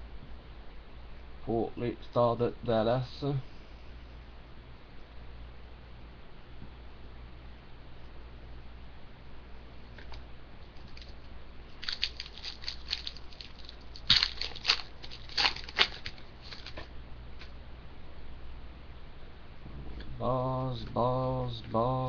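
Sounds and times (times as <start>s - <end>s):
wrapper crinkling and tearing: 10.8s - 16.9s.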